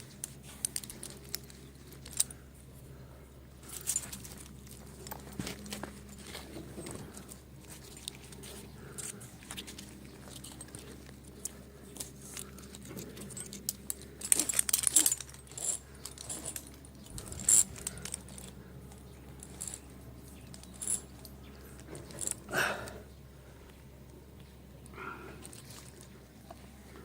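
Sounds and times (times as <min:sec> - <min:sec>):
small metal objects jangling: 0:03.6 - 0:22.5.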